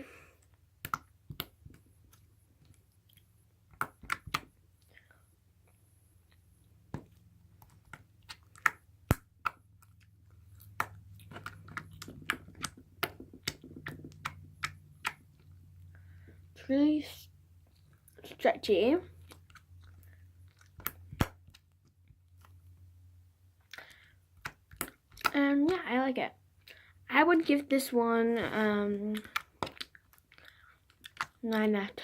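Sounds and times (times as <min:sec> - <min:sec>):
slime clicking and popping: 0:00.8 - 0:02.8, 0:03.6 - 0:04.5, 0:06.9 - 0:15.5, 0:19.2 - 0:22.4, 0:23.8 - 0:25.8, 0:29.1 - 0:31.6.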